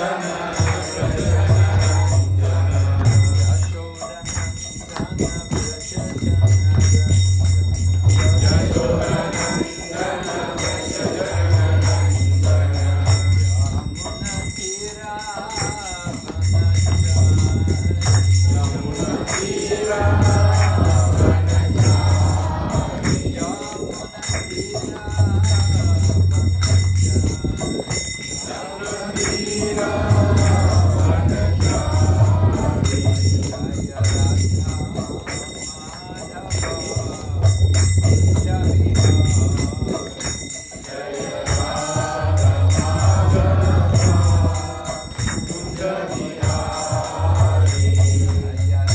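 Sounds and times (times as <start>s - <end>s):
low pulsing beat: 0.0s - 28.5s, 29.1s - 40.8s, 41.4s - 48.9s
bells jingling: 0.0s - 48.9s
hand cymbals clashing: 0.0s - 48.9s
voices singing: 0.0s - 48.9s.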